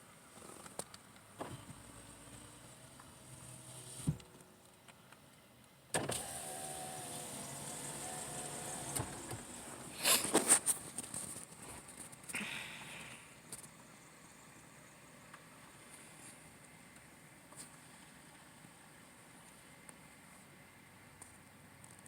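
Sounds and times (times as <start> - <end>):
power window motor whining: 1.4 - 4.2, 6.0 - 10.0.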